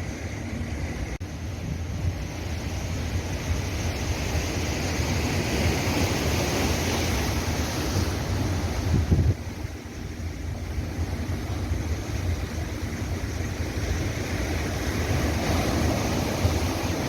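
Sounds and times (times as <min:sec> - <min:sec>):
sea surf washing ashore: 0:00.0 - 0:17.0.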